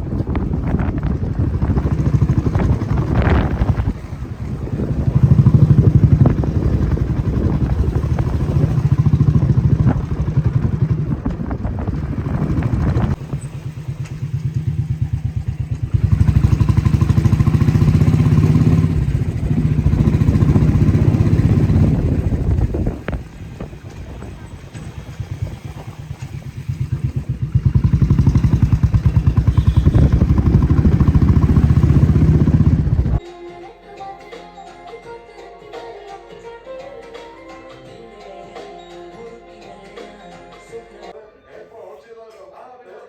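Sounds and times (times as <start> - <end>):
vehicle engine rumble: 0.0 - 33.2.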